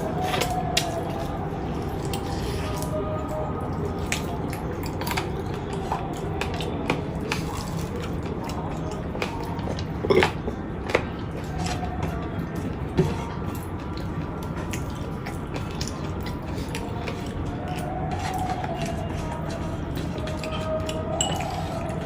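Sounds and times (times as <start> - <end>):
person chewing close up: 0.0 - 22.0.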